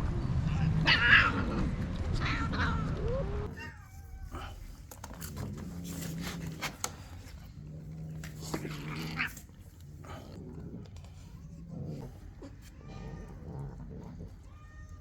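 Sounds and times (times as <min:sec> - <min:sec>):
animal growling low: 0:04.2 - 0:14.6.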